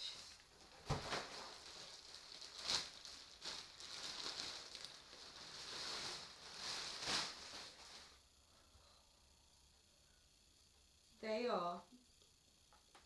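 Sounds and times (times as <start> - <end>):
packaging rustling and crinkling: 0.0 - 8.2.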